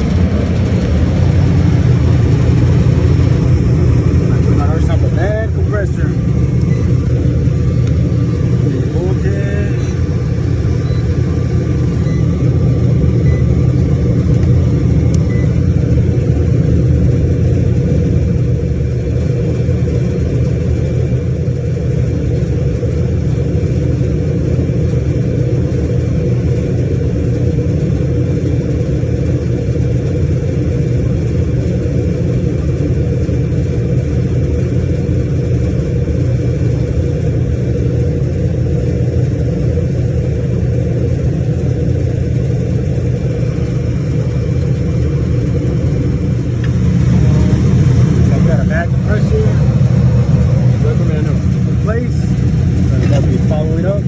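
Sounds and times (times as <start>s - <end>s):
condensing unit humming: 0.0s - 54.0s.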